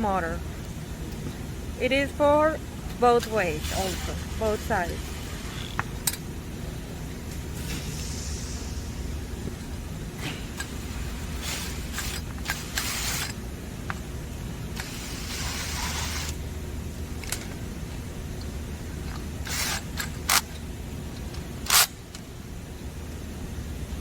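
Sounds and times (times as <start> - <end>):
low hum: 0.0 - 24.0
metal parts scraping: 11.3 - 13.4, 19.4 - 20.5.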